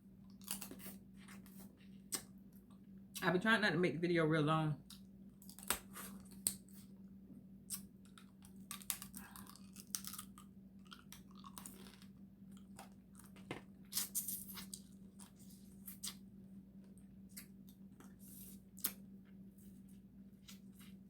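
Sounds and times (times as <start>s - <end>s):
steady low hum: 0.0s - 21.0s
chewing crab: 7.7s - 16.2s.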